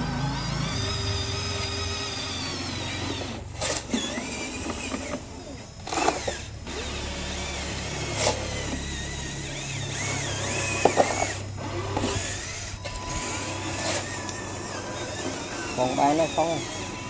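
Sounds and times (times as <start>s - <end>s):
small electric motor whirring: 0.0s - 17.0s.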